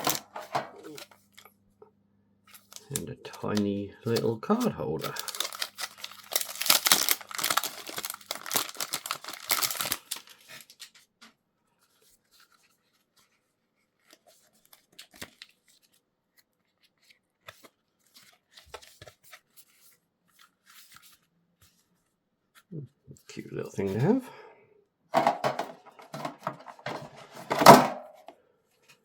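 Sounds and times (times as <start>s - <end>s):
packaging tearing and crinkling: 0.0s - 1.2s, 2.5s - 11.0s.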